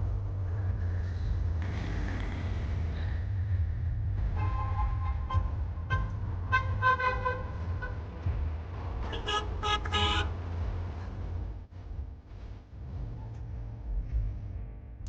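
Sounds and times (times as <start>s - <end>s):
car driving rumble: 0.0s - 15.0s
vehicle horns honking: 4.4s - 11.1s.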